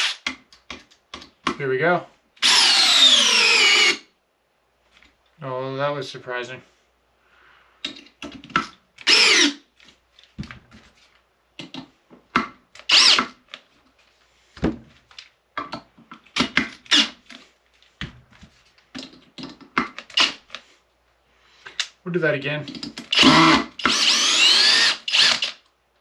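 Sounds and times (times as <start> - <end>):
cordless drill motor spinning: 2.4 - 4.0, 9.0 - 9.6, 12.9 - 13.3, 23.1 - 25.6.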